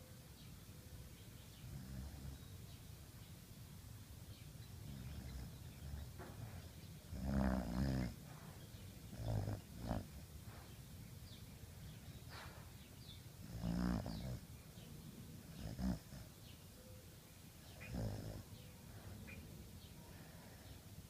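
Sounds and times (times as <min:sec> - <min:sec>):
dog snoring: 0:01.6 - 0:02.4, 0:04.8 - 0:08.4, 0:09.0 - 0:10.3, 0:13.4 - 0:14.5, 0:15.4 - 0:16.3, 0:17.7 - 0:18.6.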